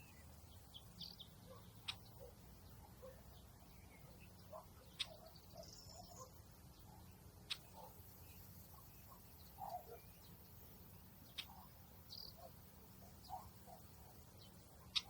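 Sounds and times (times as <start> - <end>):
sharp ticks: 7.4 - 7.7.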